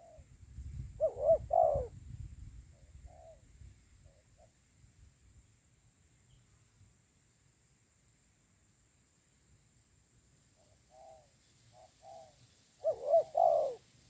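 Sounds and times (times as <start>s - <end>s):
dove cooing: 0.0s - 0.2s, 1.0s - 1.9s, 10.9s - 13.9s.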